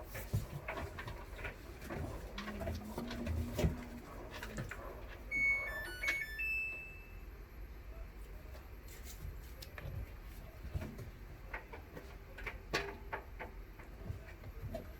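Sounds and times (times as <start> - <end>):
electronic beep jingle: 5.3 - 7.2.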